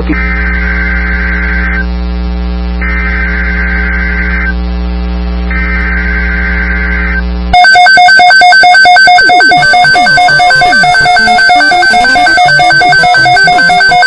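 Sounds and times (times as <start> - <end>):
electrical hum: 0.0 - 7.7, 9.0 - 14.0
pulsing electronic alert tone: 7.6 - 14.0
screeching digital data bursts: 8.4 - 14.0.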